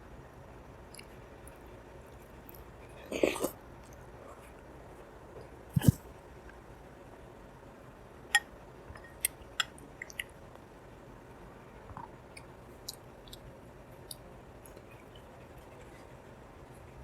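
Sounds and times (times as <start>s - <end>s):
person chewing sticky sweets: 9.0s - 10.5s, 11.9s - 15.7s.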